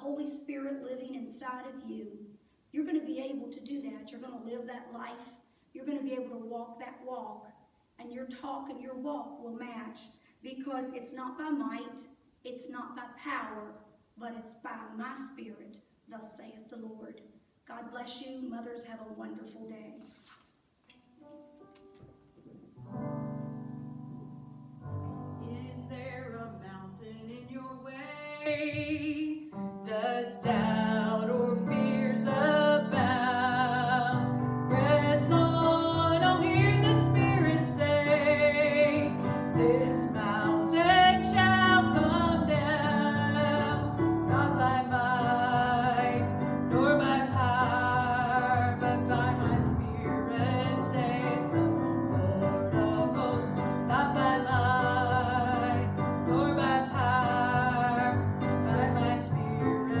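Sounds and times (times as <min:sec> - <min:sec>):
piano accompaniment: 0:21.0 - 1:00.0
person singing with vibrato: 0:25.3 - 1:00.0.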